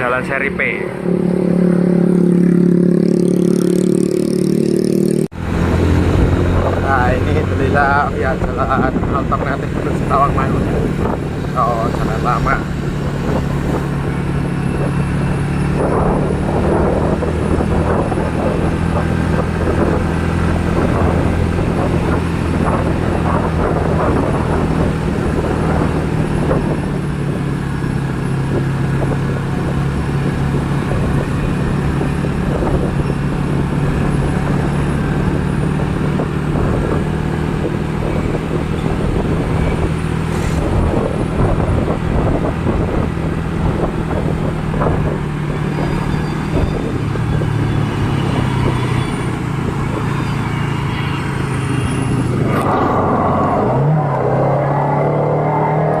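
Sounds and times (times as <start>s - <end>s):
traffic noise: 0.0s - 56.0s.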